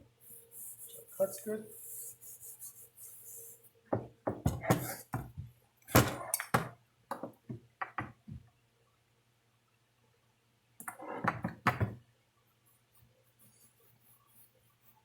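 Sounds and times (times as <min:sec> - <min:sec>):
hard objects knocking and clunking: 0:03.9 - 0:08.5, 0:10.8 - 0:12.0.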